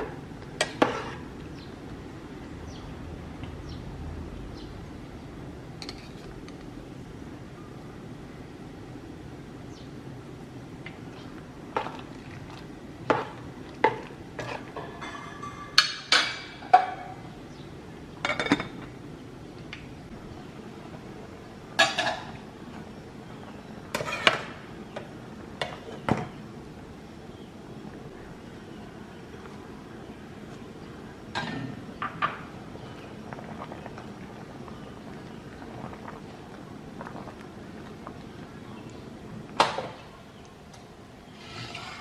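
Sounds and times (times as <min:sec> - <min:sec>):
steady low hiss: 0:00.0 - 0:42.0
dishes and utensils clattering: 0:13.1 - 0:17.2, 0:18.2 - 0:18.9, 0:21.8 - 0:22.4, 0:24.0 - 0:24.6, 0:31.4 - 0:32.4.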